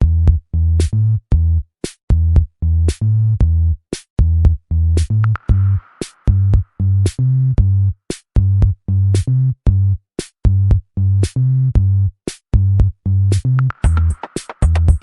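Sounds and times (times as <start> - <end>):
electronic drum-machine music: 13.6 - 15.0.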